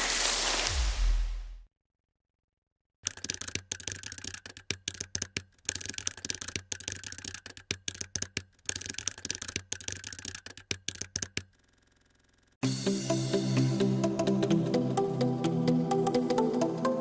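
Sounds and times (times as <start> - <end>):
computer hardware clicks and rattles: 3.0 - 12.6.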